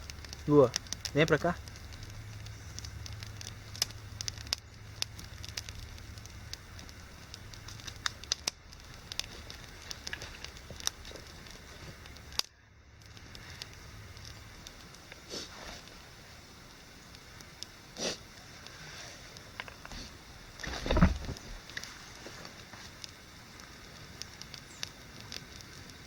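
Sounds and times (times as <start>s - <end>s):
campfire crackling and popping: 0.0s - 26.0s
low fire rumble: 0.0s - 26.0s.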